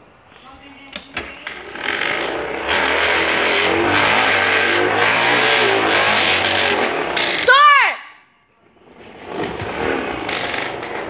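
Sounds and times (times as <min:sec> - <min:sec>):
bicycle noisemaker: 0:01.4 - 0:07.8, 0:09.0 - 0:11.0.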